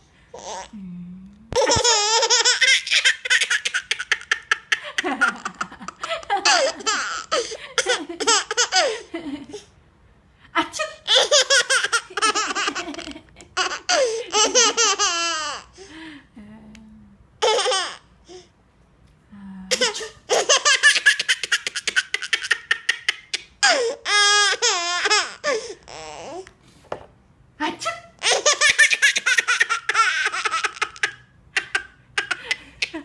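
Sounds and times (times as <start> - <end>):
baby laughing: 1.6 - 9.7, 11.0 - 15.7, 17.4 - 18.1, 19.7 - 26.4, 28.2 - 33.0.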